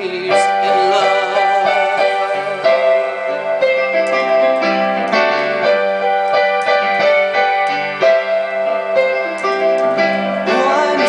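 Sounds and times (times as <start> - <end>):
slow piano ballad: 0.0 - 11.0.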